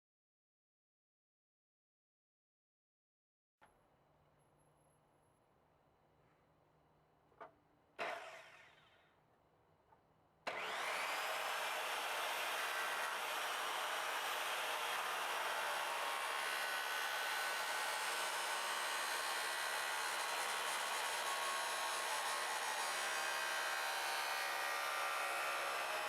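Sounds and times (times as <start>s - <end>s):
miter saw motor whining: 10.5s - 26.0s.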